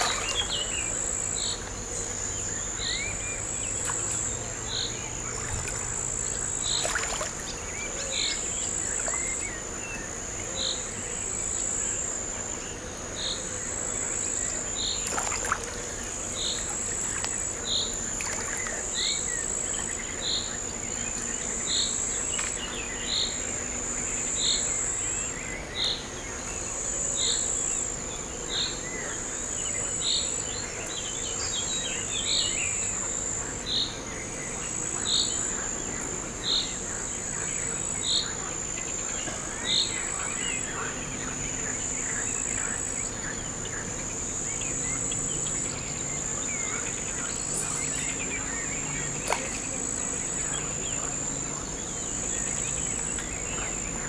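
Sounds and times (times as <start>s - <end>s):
crickets trilling: 0.0s - 54.0s.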